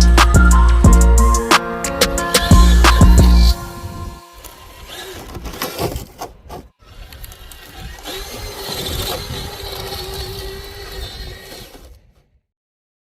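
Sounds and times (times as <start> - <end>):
electric motor and gears whining: 2.1 - 12.3.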